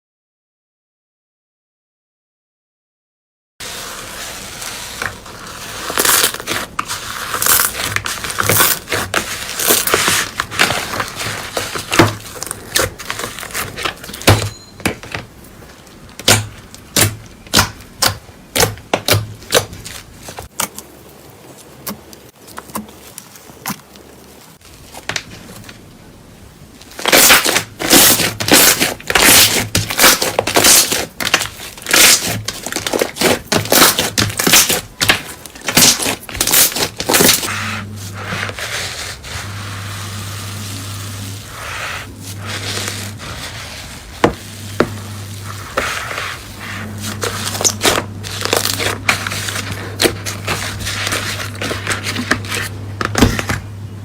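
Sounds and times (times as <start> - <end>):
hands squeezing sticky slime: 3.7 - 14.3.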